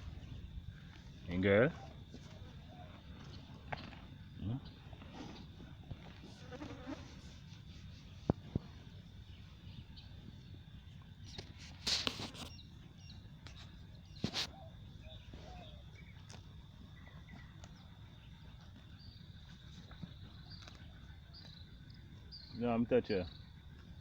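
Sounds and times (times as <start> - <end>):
insect drone: 0.0 - 24.0
faint bird chirps: 12.3 - 23.6.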